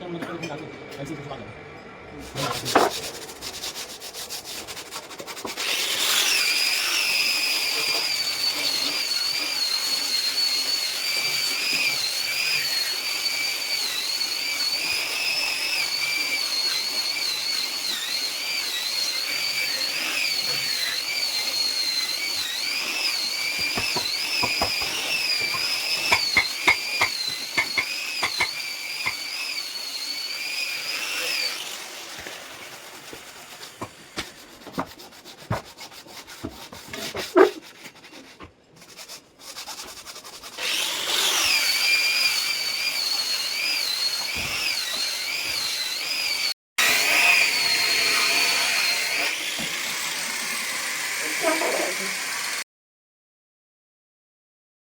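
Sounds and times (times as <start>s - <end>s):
electric sander whining: 5.6s - 32.8s, 40.6s - 52.6s.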